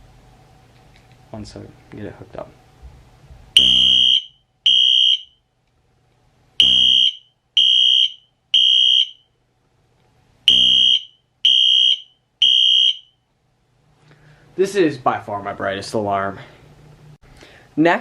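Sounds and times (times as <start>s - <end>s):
fire alarm horn blasts: 3.6s - 5.5s, 6.6s - 9.4s, 10.5s - 13.2s.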